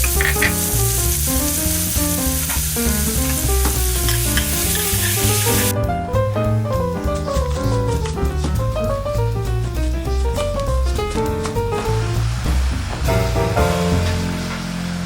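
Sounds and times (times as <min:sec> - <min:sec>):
food sizzling in a pan: 0:00.0 - 0:05.7, 0:13.8 - 0:15.0
background music: 0:00.0 - 0:15.0.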